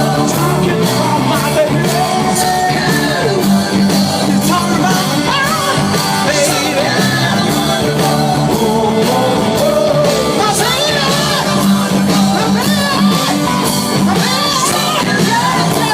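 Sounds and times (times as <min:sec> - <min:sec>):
rock band playing: 0:00.0 - 0:15.9
vocalist singing and shouting: 0:00.0 - 0:15.9.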